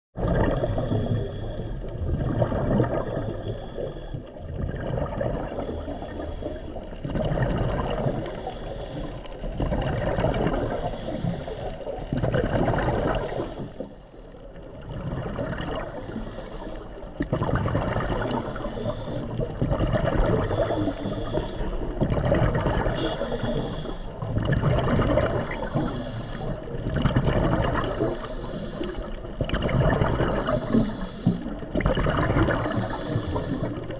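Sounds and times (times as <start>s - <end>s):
water bubbling and gurgling: 0.2s - 33.9s
hissing breath underwater: 0.4s - 1.9s, 2.8s - 4.2s, 5.4s - 6.9s, 7.9s - 9.4s, 10.4s - 12.0s, 13.0s - 14.3s, 15.7s - 17.1s, 17.9s - 26.9s, 27.6s - 33.9s.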